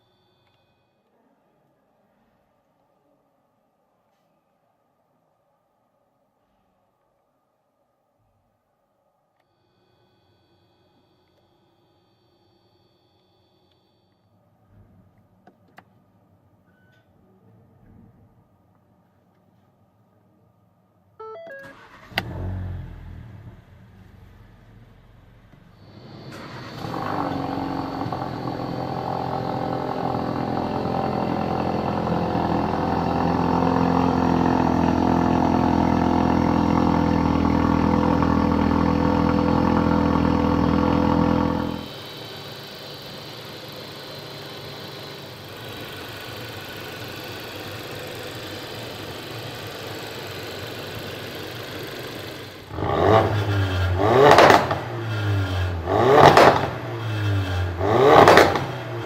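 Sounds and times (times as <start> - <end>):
car engine and exhaust running: 21.3 - 59.0
engine revving sharply: 21.6 - 46.0, 50.8 - 59.0.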